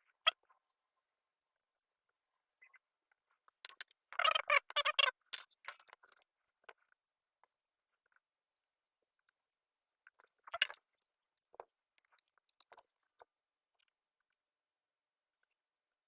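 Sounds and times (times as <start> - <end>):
crackling and scraping on circuit board: 2.5 - 14.4.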